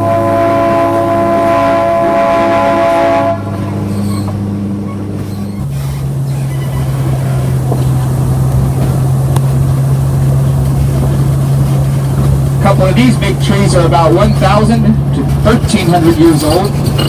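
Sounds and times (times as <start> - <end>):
train whistle chord: 0.0 - 3.6
train running drone: 0.0 - 17.0.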